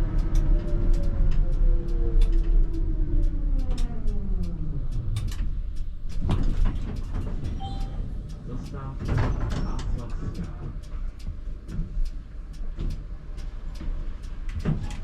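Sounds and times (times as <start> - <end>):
tram drive whining: 0.0 - 15.0
tram running rumble: 0.0 - 15.0.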